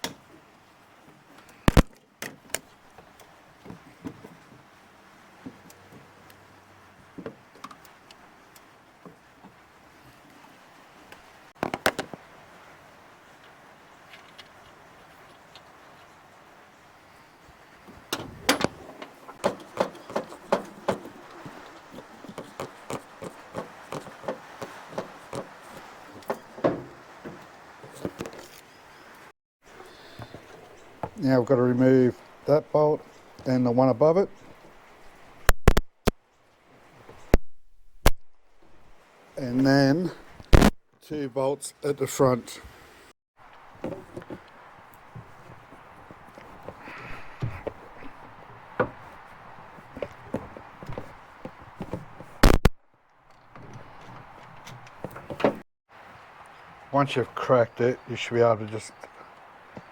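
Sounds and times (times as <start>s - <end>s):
metal tools clinking on engine parts: 18.1s - 22.8s.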